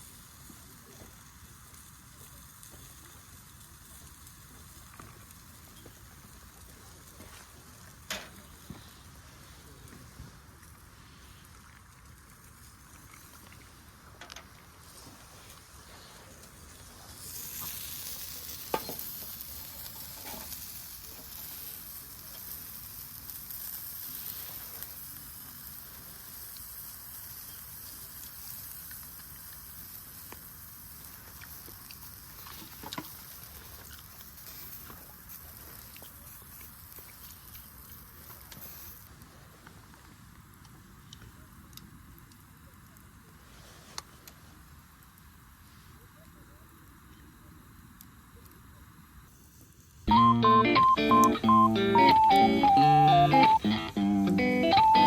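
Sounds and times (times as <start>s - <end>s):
meat sizzling: 14.9s - 39.0s, 50.4s - 55.0s.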